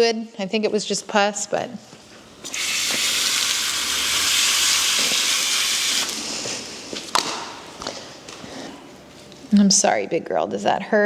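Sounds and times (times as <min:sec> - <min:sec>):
water spraying from a hose: 0:02.2 - 0:07.8.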